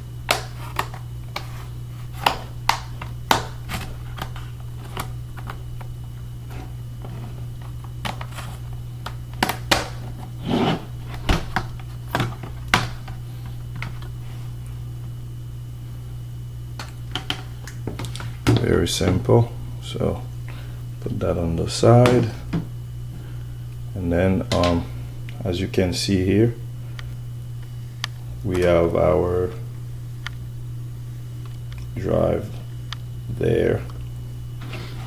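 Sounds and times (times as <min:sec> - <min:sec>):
short scraping rub: 0:10.4 - 0:10.9.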